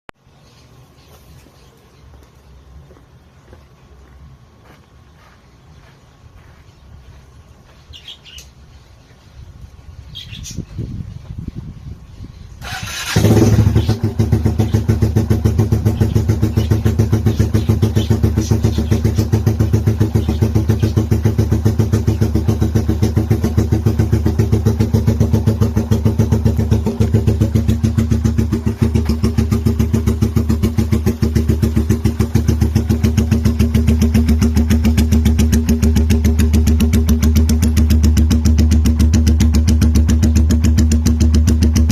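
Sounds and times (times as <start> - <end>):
motorcycle starting and idling: 12.5 - 41.9.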